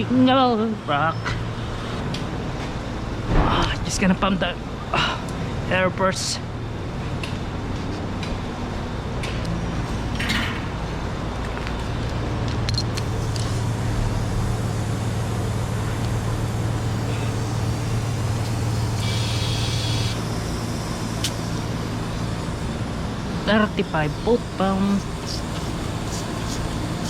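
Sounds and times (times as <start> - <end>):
steady low hum: 0.0 - 27.0
air hissing: 12.9 - 27.0.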